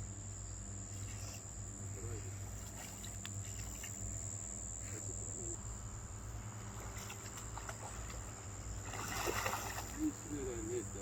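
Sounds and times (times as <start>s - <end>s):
high-pitched insect buzz: 0.0s - 6.6s
low steady hum: 0.0s - 11.0s.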